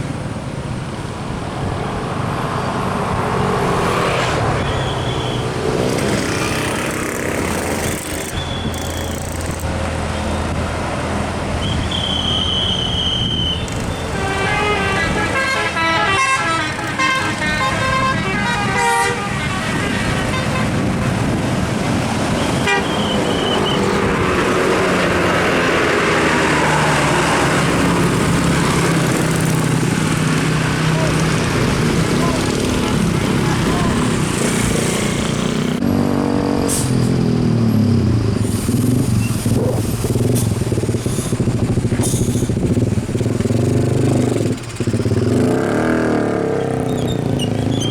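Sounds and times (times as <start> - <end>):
vehicle engines and traffic: 0.0 - 47.9
high horn tones: 11.9 - 21.4, 22.4 - 23.9
musical vehicle horn tune: 14.0 - 21.4, 22.5 - 23.6.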